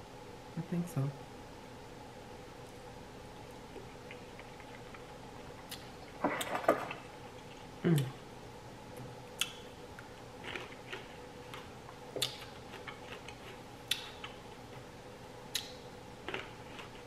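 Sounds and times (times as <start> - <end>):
faint steady hum: 0.0 - 17.0
mouth chewing fruit: 3.5 - 8.2, 9.4 - 14.7, 15.5 - 17.0.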